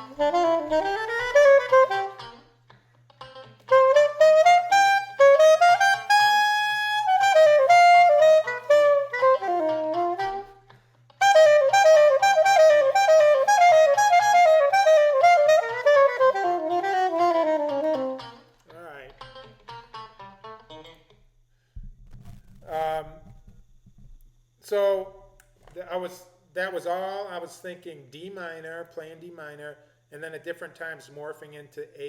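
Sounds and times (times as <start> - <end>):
saxophone improvising jazz-funk: 0.0 - 2.6, 3.6 - 18.5.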